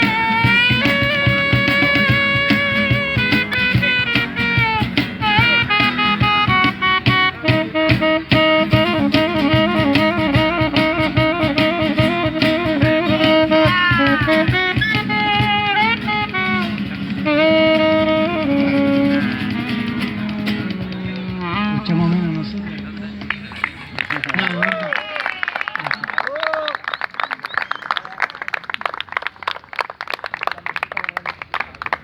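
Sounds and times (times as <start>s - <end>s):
steady drums: 0.0s - 24.2s.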